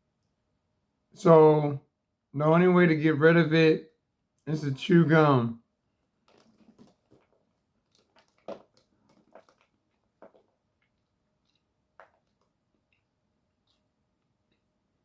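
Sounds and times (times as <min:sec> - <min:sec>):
mouth chewing wet clicks: 0:06.3 - 0:14.7.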